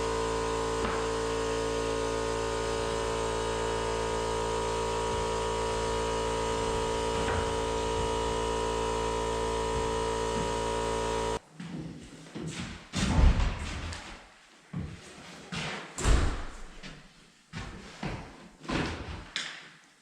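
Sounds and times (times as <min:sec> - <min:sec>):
steady hum with low drone: 0:00.0 - 0:11.4.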